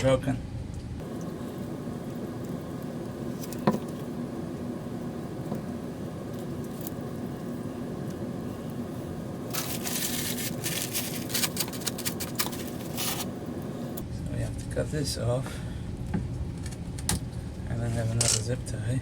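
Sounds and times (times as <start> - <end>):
steady low hum: 0.0 - 19.0
plastic and cord rustling: 9.5 - 13.3.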